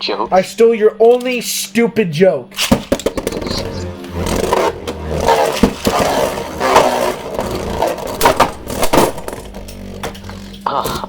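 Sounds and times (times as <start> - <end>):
spinning tops whirring and scraping: 2.6 - 10.6.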